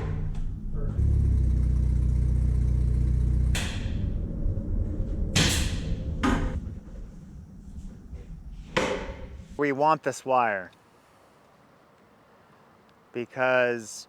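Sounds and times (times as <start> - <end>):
low machine hum: 0.0 - 9.6.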